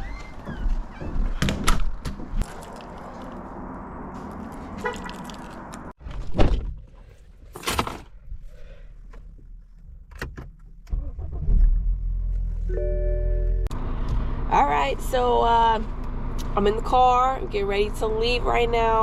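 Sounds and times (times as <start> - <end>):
car engine starting and idling: 7.6 - 19.0.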